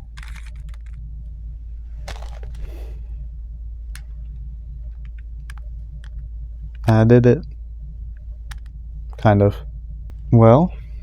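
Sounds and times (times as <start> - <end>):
steady low hum: 0.0 - 11.0
plastic puzzle cube clicks: 0.2 - 1.0.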